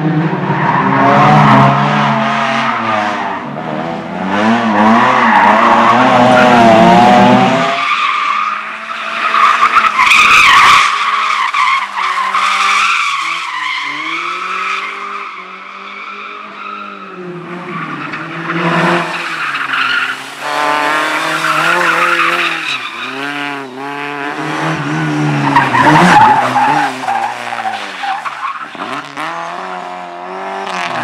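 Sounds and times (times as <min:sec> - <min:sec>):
car engine revving: 0:01.0 - 0:07.9, 0:17.2 - 0:31.0
tyres skidding and squealing: 0:04.4 - 0:30.0.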